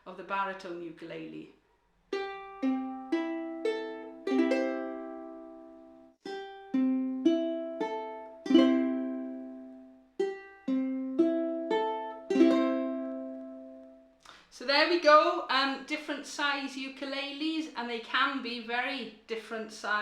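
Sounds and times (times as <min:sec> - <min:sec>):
ukulele strings plucked and strummed: 0:02.1 - 0:14.1.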